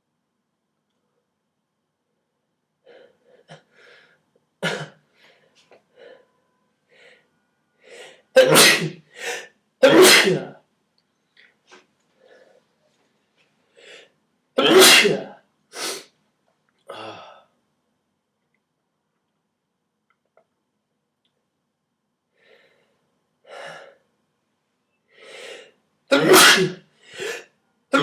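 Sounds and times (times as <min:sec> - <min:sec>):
soft catching breaths: 0:05.1 - 0:08.3, 0:11.4 - 0:14.2, 0:22.4 - 0:24.1, 0:25.1 - 0:25.8
person sneezing: 0:08.4 - 0:10.6, 0:14.6 - 0:16.1, 0:26.1 - 0:28.0.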